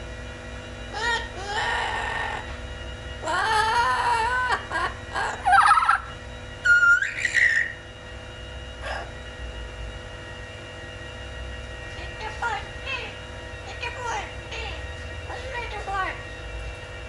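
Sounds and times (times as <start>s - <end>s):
parrot squawks and whistles: 3.2s - 7.8s.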